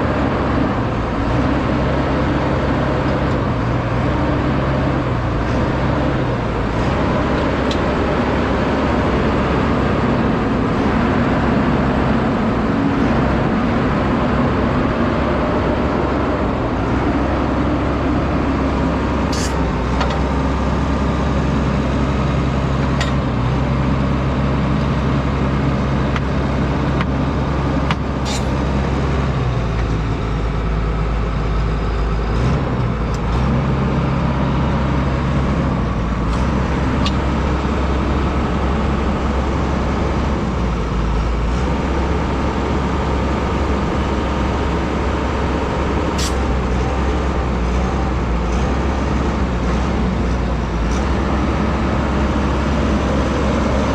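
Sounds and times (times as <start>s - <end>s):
diesel engine running: 0.0s - 53.9s.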